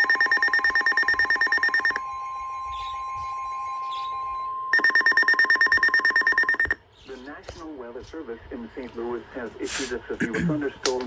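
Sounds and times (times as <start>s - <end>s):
rapid pulsing electronic buzz: 0.0s - 6.6s
steady alert tone: 0.0s - 6.8s.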